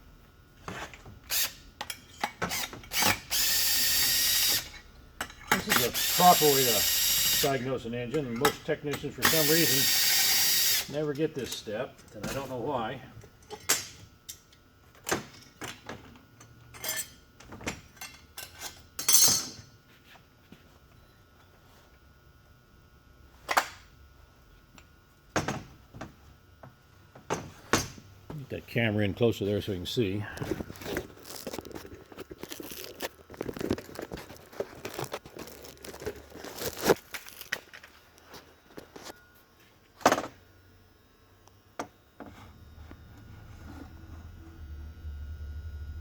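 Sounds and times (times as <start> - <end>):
hand tools clinking and clattering: 16.8 - 17.2, 17.9 - 19.6.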